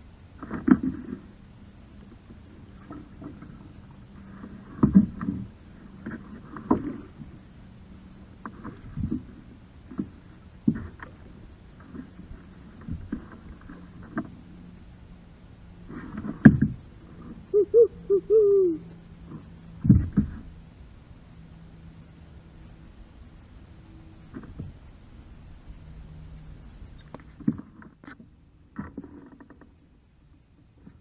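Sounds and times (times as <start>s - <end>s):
paddle splashing in water: 0.3s - 17.6s, 18.9s - 21.0s
paddle knocking against hull: 2.8s - 7.4s, 8.4s - 14.4s, 15.9s - 17.4s, 19.3s - 20.5s.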